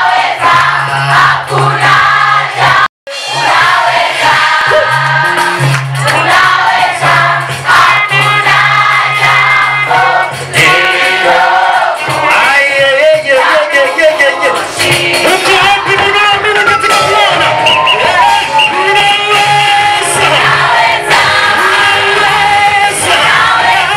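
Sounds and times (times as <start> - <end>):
choir singing gospel music: 0.0 - 23.9.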